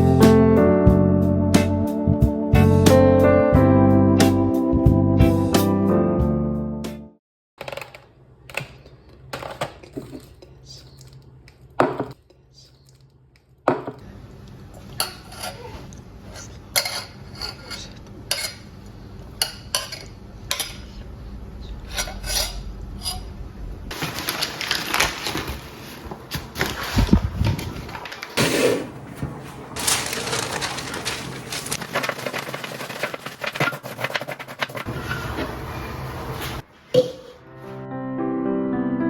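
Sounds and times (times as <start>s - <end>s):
dishes and utensils clinking: 14.9s - 18.7s, 19.4s - 21.0s, 36.9s - 37.4s.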